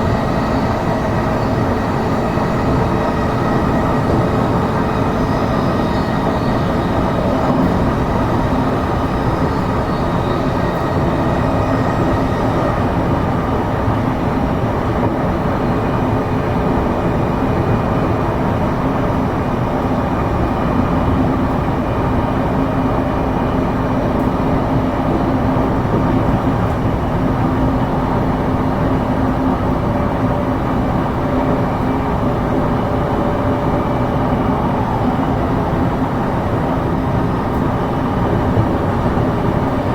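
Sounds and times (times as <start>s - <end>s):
faint steady tones: 0.0s - 14.0s
train wheels rumbling on rail: 0.0s - 39.9s.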